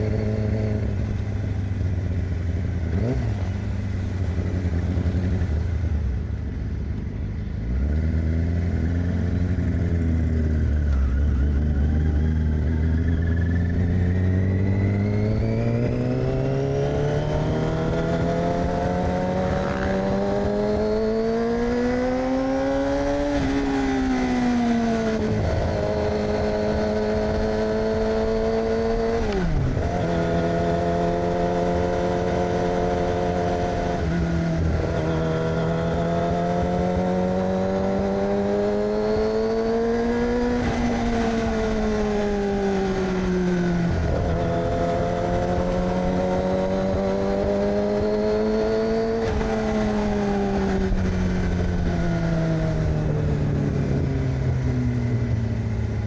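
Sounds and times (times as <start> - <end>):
motorcycle engine revving: 0.0 - 6.7, 7.4 - 56.0.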